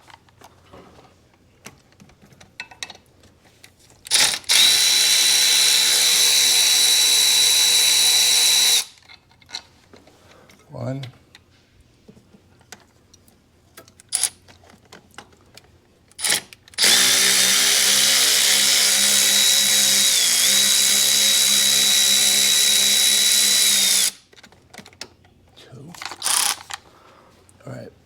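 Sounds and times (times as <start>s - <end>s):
tools clicking and knocking: 1.6s - 3.4s, 8.6s - 11.2s, 13.7s - 17.1s, 18.8s - 26.8s
power drill spinning: 4.1s - 9.0s, 16.2s - 24.2s, 26.2s - 26.8s.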